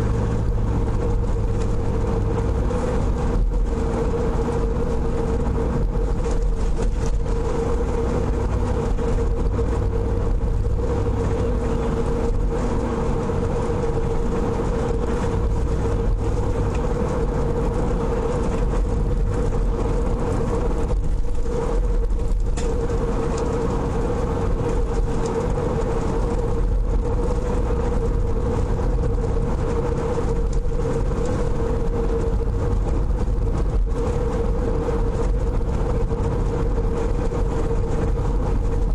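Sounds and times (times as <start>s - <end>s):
car road and engine noise: 0.0s - 38.9s.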